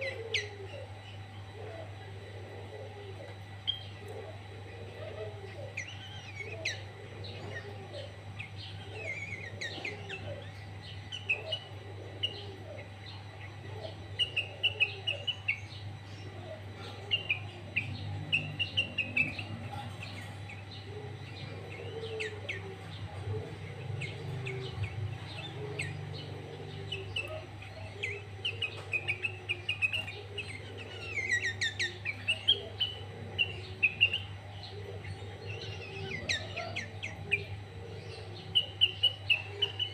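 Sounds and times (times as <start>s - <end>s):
steady low hum: 0.0s - 39.9s
bird singing rapid chirps: 5.6s - 39.9s.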